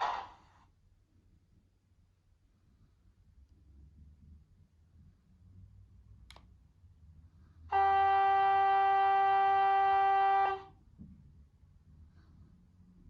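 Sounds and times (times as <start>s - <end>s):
model train horn from small speaker: 7.7s - 10.8s.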